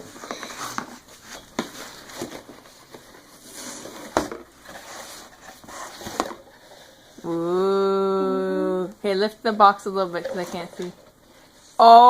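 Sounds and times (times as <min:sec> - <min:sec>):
cardboard packaging rustling: 0:00.0 - 0:07.4.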